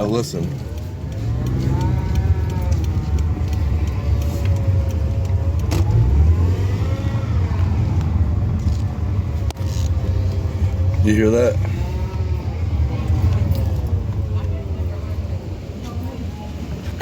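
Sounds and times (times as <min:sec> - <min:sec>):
car whining: 0:00.0 - 0:17.0
low rumble: 0:00.6 - 0:16.8.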